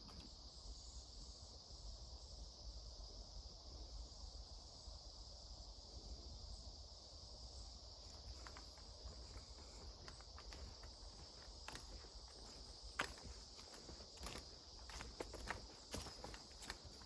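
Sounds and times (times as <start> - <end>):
insect drone: 0.0 - 17.0
footsteps: 8.1 - 17.0.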